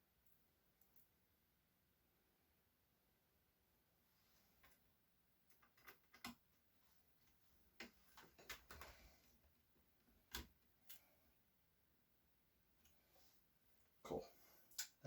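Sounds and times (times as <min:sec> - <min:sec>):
small laptop parts clicking: 0:05.5 - 0:06.5.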